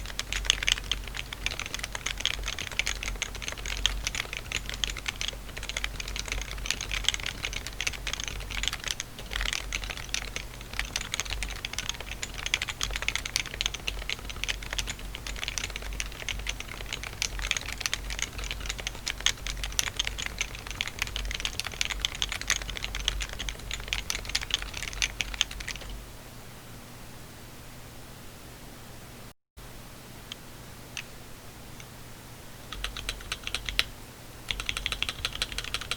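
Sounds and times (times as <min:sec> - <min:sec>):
fast typing on keyboard: 0:00.0 - 0:26.0, 0:32.7 - 0:33.9, 0:34.5 - 0:35.9.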